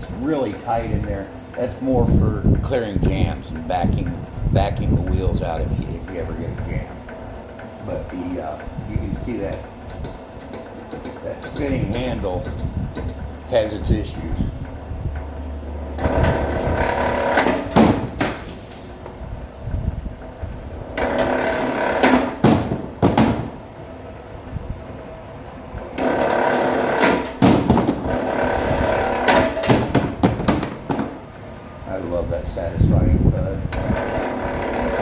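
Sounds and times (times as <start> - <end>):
wire stripping machine motor whine: 0.0 - 35.0
sharp clicks and knocks: 0.4 - 19.2, 25.7 - 31.2.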